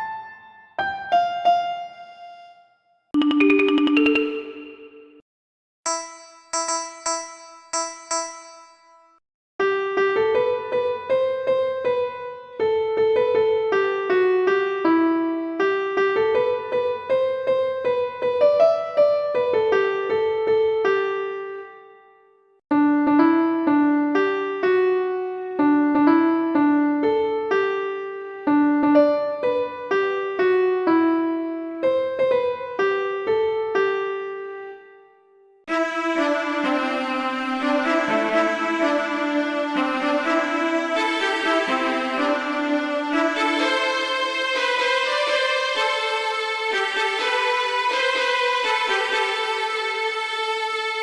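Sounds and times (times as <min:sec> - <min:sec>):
phone ringtone melody: 0:03.2 - 0:05.2, 0:05.9 - 0:09.1.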